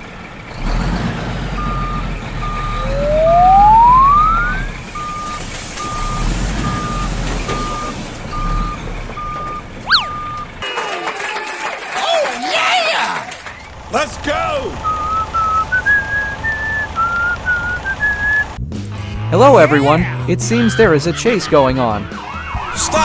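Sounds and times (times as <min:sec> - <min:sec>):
low engine rumble: 0:00.0 - 0:10.6, 0:13.3 - 0:18.6
truck reversing alarm beeping: 0:00.0 - 0:10.6, 0:13.4 - 0:18.6
whistle-like rising tone: 0:01.6 - 0:07.9, 0:08.5 - 0:10.4, 0:14.8 - 0:18.6, 0:19.5 - 0:20.1
short sharp chirp: 0:09.9 - 0:10.2.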